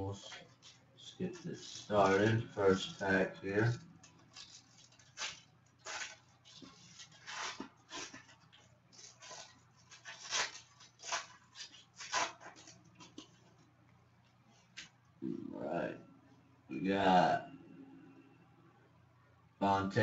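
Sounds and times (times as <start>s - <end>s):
cards rustling: 0.2s - 13.5s
wrapper tearing and crinkling: 4.0s - 13.4s.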